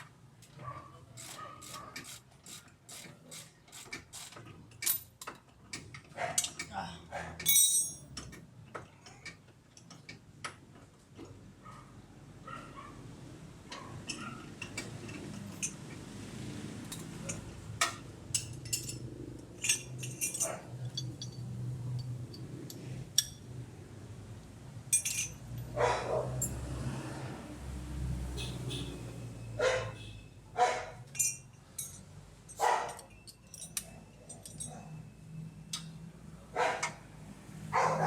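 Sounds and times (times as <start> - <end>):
metallic clinks of hand tools: 7.4 - 8.3, 18.3 - 22.5, 24.9 - 25.5, 31.1 - 35.0.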